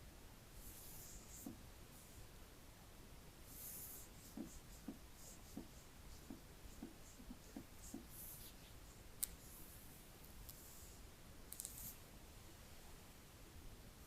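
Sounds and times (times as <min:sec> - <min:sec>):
soft rustles and scrapes: 0:03.5 - 0:12.1.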